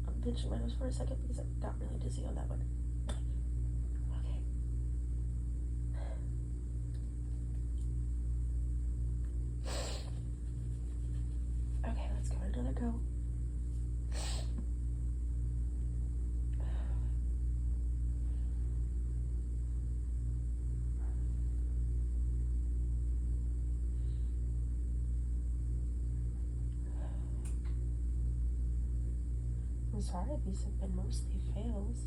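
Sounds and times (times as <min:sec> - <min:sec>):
pulsing low hum: 0:00.0 - 0:32.0
faint nasal breaths: 0:09.6 - 0:10.3, 0:14.1 - 0:14.6.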